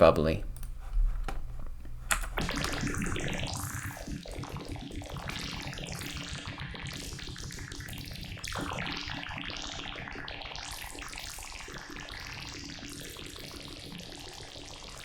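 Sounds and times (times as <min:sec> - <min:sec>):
bubbly synth clicks: 0:02.2 - 0:04.0.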